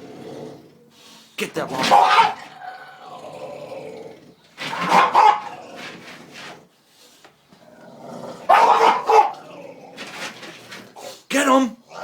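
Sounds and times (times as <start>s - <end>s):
dog barking: 1.8s - 2.4s, 4.7s - 5.5s, 8.5s - 9.4s.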